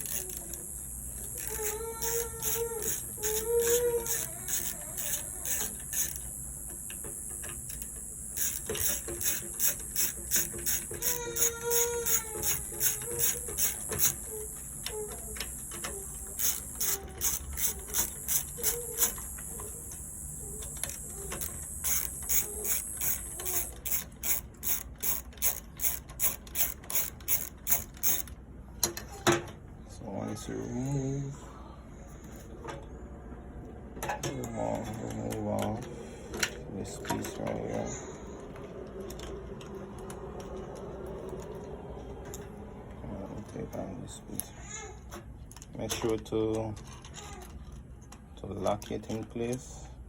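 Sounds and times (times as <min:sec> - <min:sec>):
short squeaks: 0:00.0 - 0:28.3
ratcheting driver clicking: 0:00.0 - 0:28.9.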